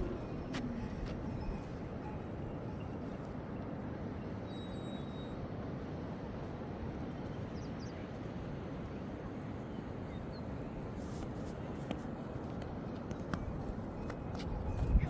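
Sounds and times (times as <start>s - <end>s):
steady wind noise: 0.0s - 4.4s, 5.4s - 15.0s.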